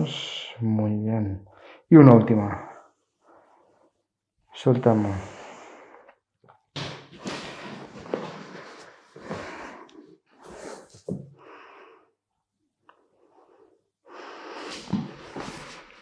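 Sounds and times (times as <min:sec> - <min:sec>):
person breathing deeply: 0:07.3 - 0:12.1, 0:13.3 - 0:15.9.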